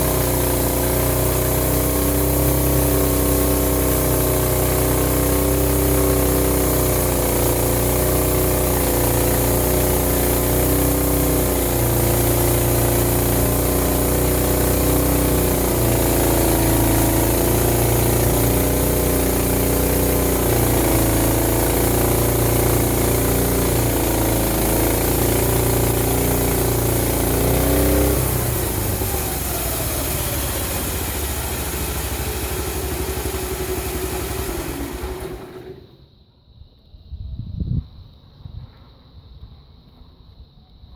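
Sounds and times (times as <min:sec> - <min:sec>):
sawmill engine running: 0:00.0 - 0:36.1
whine sliding down: 0:00.0 - 0:36.1.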